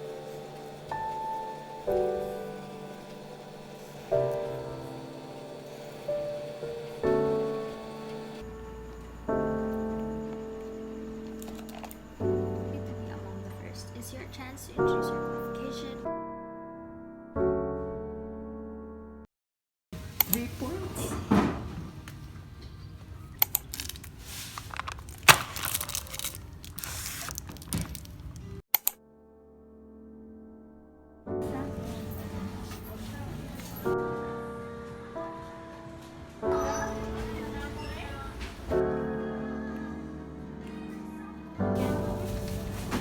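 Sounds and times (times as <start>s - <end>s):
lo-fi piano music: 0.0s - 19.2s, 29.0s - 43.0s
crinkling and tearing: 23.6s - 28.5s
sharp clicks: 28.8s - 29.0s.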